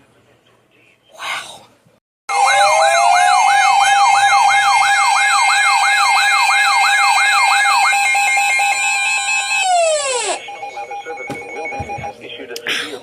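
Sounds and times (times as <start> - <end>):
electronic siren alert tone: 2.3 - 12.2.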